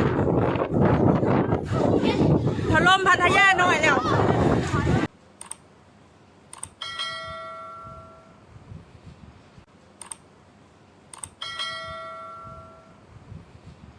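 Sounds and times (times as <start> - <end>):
short clicks: 5.4 - 5.6, 6.5 - 6.8, 10.0 - 10.3, 11.1 - 11.4
bell ding: 6.8 - 8.4, 11.4 - 13.0.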